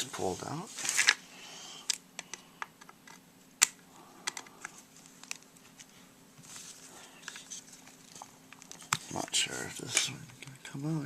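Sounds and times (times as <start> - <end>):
plastic parts clicking: 1.9 - 5.4.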